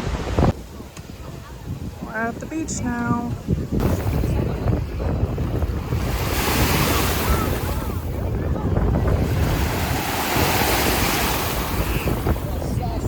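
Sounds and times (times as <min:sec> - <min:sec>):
waves washing onto beach: 0:00.0 - 0:13.0
wind buffeting microphone: 0:00.0 - 0:13.0.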